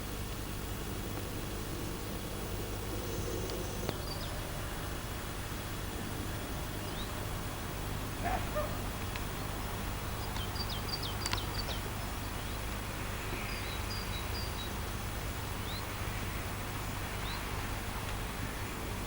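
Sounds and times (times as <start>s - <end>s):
steady low rumble: 0.0s - 13.3s
small birds chirping: 8.2s - 14.8s.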